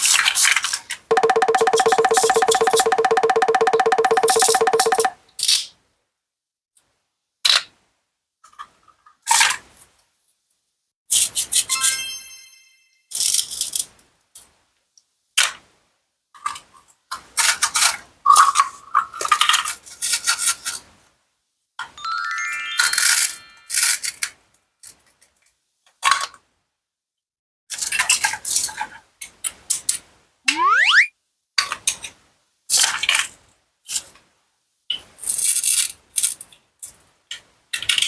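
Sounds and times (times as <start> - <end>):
rising cartoon sound effect: 30.5 - 31.1.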